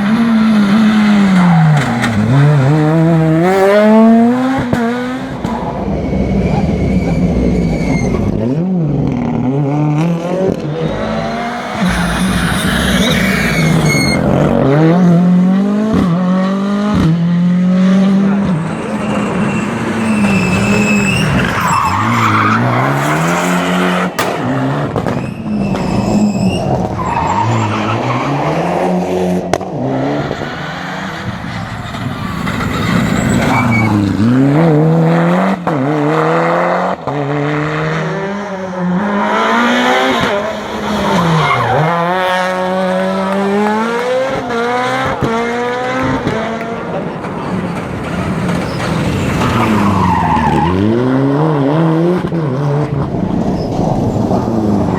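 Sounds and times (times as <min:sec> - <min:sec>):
rally car engines revving: 0:00.0 - 0:54.9
tyres squealing: 0:10.6 - 0:14.8, 0:18.5 - 0:23.7, 0:30.0 - 0:34.6, 0:39.9 - 0:42.5.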